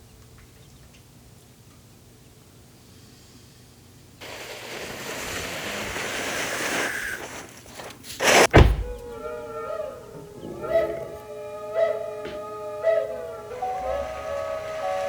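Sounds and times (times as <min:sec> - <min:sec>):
sharp loud burst: 0:08.2 - 0:09.1
drone flute music: 0:08.8 - 0:15.0
rushing noise: 0:12.8 - 0:15.0.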